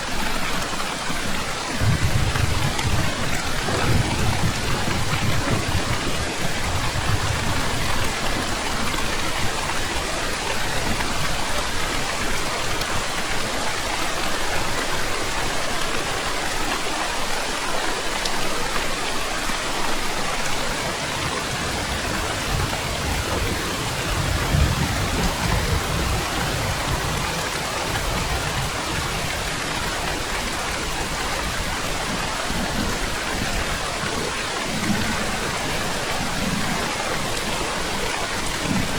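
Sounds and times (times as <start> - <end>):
heavy rain: 0.0 - 38.9
distant thunder rolling: 1.8 - 9.6, 21.0 - 31.7.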